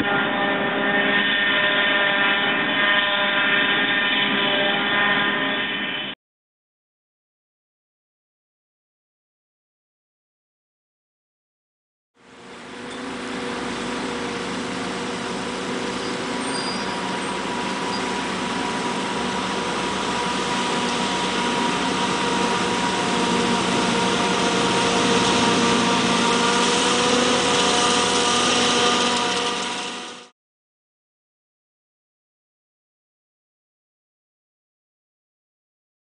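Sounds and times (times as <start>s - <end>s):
diesel engine whining hum: 12.2s - 30.3s.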